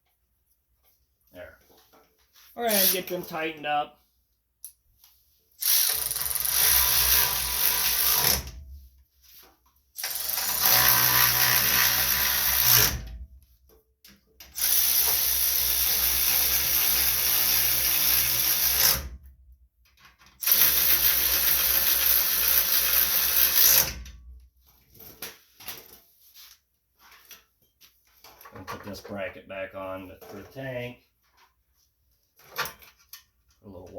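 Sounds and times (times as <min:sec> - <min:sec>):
power drill driving bolts: 0:05.6 - 0:08.6, 0:10.0 - 0:13.0, 0:14.5 - 0:19.0, 0:20.4 - 0:24.0.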